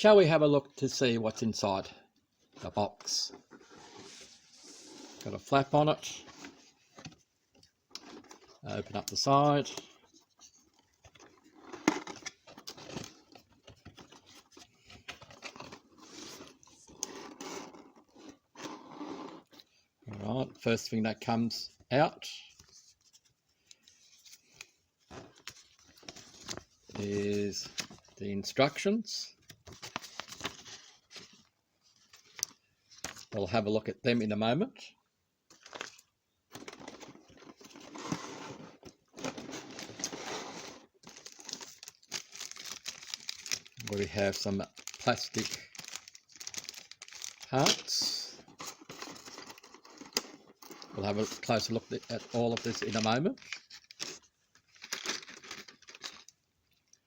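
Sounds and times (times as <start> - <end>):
packaging rustling and crinkling: 6.0 - 19.1, 29.4 - 33.4, 35.5 - 57.0.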